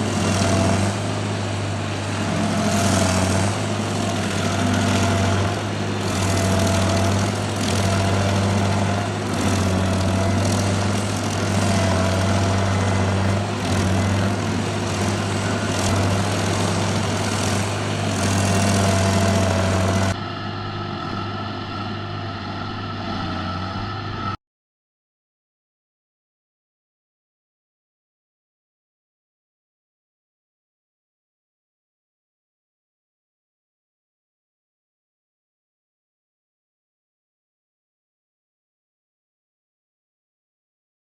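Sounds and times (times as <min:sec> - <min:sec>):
stump grinder engine running: 0:00.0 - 0:24.3.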